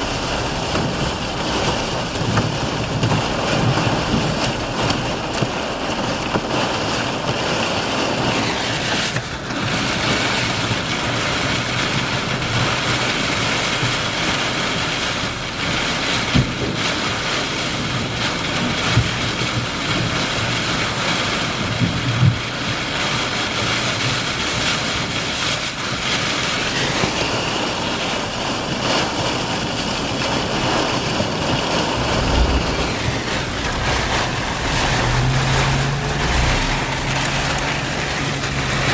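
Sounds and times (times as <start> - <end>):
strong wind: 0.0 - 7.2, 29.0 - 38.9
heavy rain: 0.0 - 38.9
wind buffeting microphone: 30.4 - 38.9
low thumps: 31.9 - 38.9.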